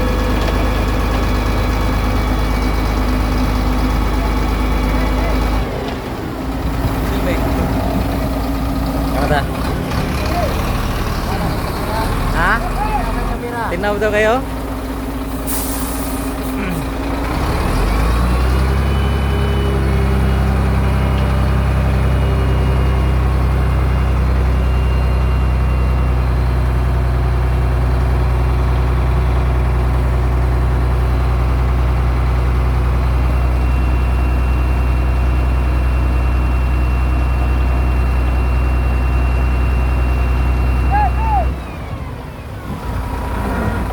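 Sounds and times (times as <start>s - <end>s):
heavy diesel engine revving: 0.0s - 43.9s
short air hiss: 15.4s - 16.6s.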